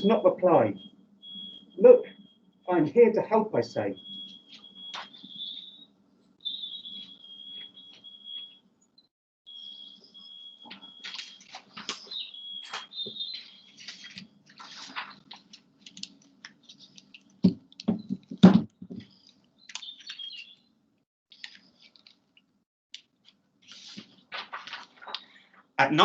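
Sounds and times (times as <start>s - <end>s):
high chirps: 3.9s - 8.6s, 9.5s - 13.9s
small clicks and scratches: 13.4s - 17.9s, 21.3s - 25.3s
loud knocks: 17.4s - 19.0s.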